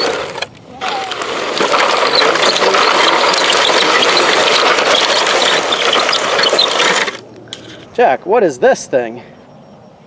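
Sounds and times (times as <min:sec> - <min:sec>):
plastic gears ratcheting and grinding: 0:00.0 - 0:07.2.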